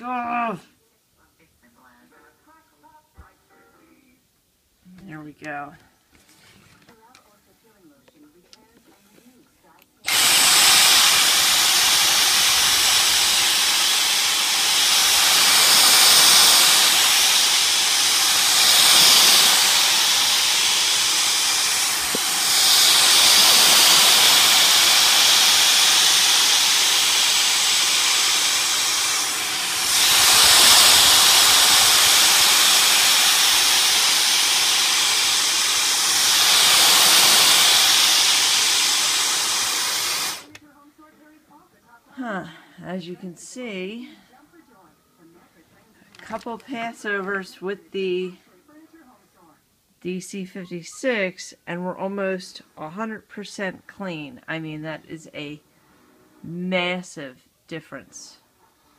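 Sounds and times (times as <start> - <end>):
cordless vacuum running: 10.0 - 40.6.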